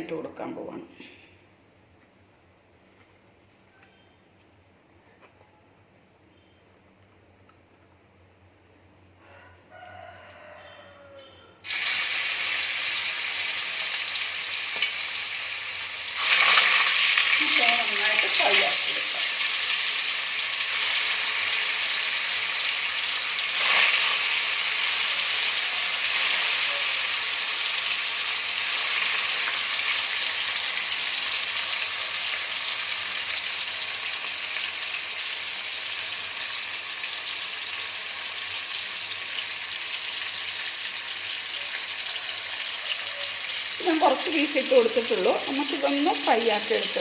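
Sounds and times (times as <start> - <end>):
chicken sizzling in oil: 11.6 - 47.0
oil crackle: 11.6 - 47.0.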